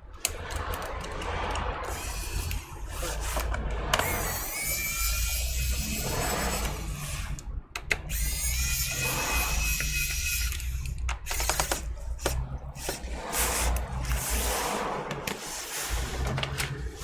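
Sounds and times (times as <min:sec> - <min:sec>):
electric screwdriver whining: 0:01.9 - 0:14.3.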